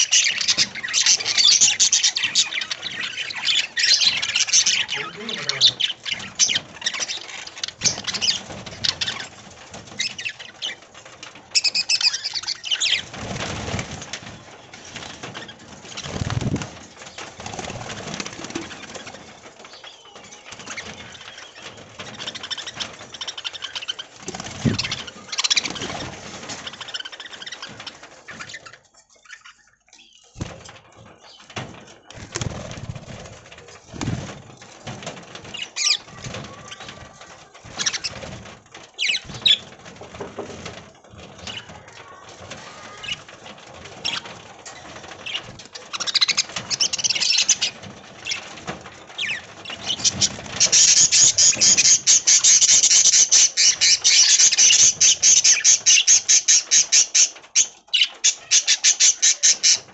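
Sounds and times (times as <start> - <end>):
loud rapid bird chatter: 0.0 - 59.9.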